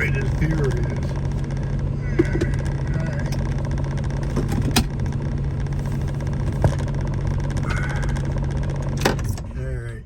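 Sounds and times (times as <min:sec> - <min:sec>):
car engine idling: 0:00.0 - 0:10.0
sharp clicks in car cabin: 0:04.3 - 0:05.2.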